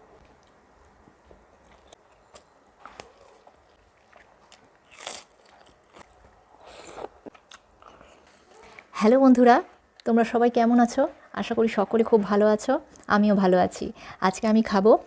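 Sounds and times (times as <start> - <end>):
crunchy bites: 4.2 - 7.7.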